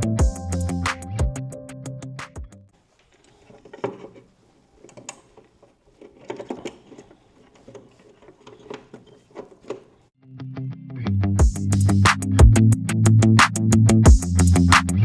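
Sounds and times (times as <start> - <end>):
clicks taps and rattles of parts: 3.0 - 10.1.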